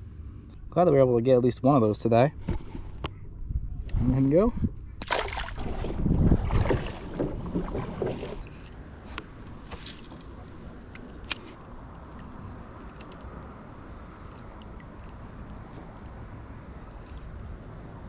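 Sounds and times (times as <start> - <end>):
light wind: 0.0 - 18.0
water splashing against kayak: 5.0 - 11.6.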